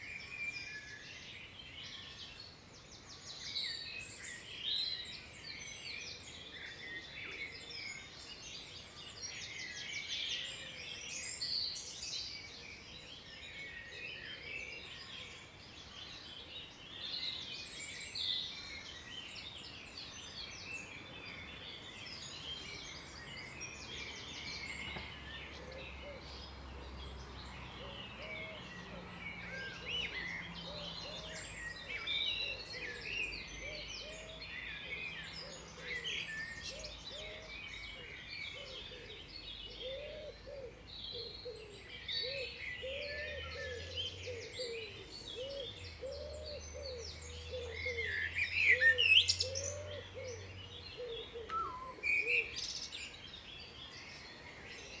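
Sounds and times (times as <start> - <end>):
songbirds chirping and singing: 0.0 - 55.0.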